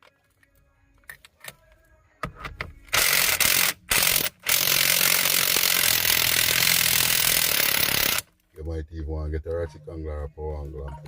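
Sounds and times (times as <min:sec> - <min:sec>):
impact wrench bursts: 0:02.9 - 0:08.3.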